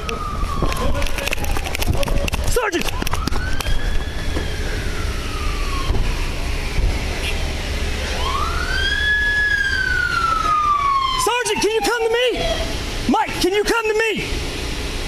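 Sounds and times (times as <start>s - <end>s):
steady low rumble: 0.0s - 11.2s
emergency siren wailing: 0.0s - 14.3s.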